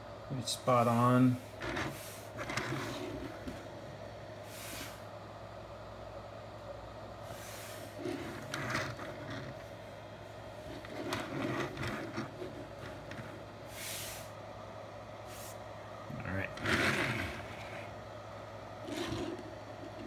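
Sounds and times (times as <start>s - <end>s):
low electrical hum: 0.0s - 20.0s
plastic toys clicking and rubbing: 8.0s - 9.6s.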